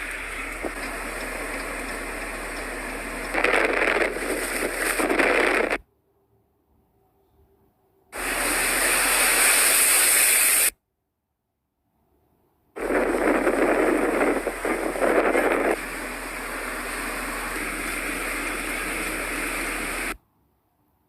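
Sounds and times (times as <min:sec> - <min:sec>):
blizzard wind rushing: 0:00.0 - 0:05.8, 0:08.2 - 0:10.7, 0:12.8 - 0:20.2.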